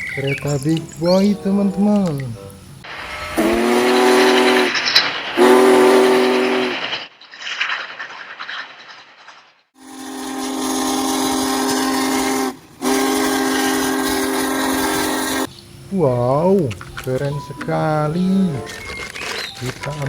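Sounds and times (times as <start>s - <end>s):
steam hissing: 0.0s - 20.0s
steam locomotive whistle: 2.9s - 7.0s, 9.8s - 15.5s.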